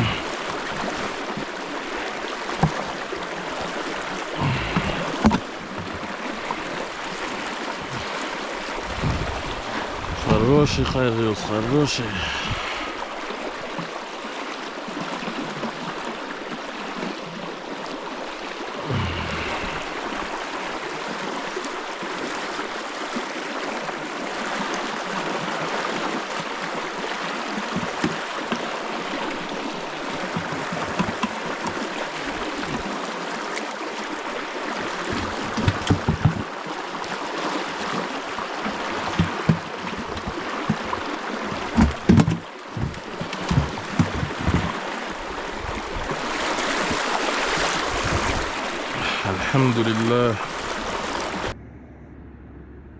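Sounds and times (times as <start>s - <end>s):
river water flowing: 0.0s - 51.6s
short low bumps: 35.1s - 36.5s, 39.0s - 44.8s.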